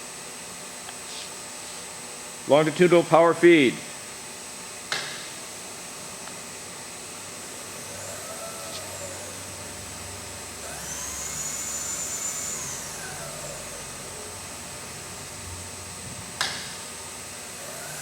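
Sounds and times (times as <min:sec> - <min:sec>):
steady high whine: 0:00.0 - 0:18.0
power feed motor whining: 0:05.7 - 0:18.0.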